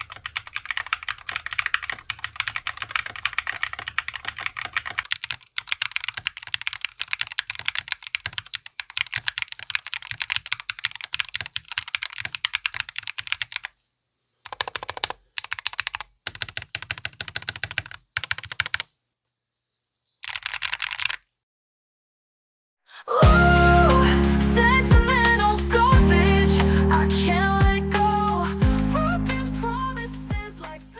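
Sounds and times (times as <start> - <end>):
mechanical keyboard typing: 0.0 - 13.7, 14.4 - 18.9, 20.2 - 21.2.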